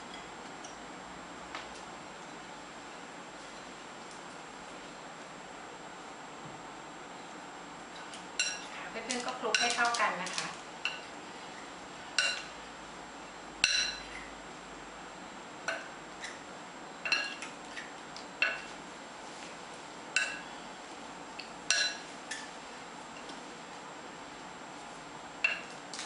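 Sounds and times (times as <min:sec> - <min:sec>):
utensils clinking against bowl: 0:08.4 - 0:11.1, 0:12.2 - 0:12.5, 0:17.0 - 0:17.5, 0:21.7 - 0:22.5.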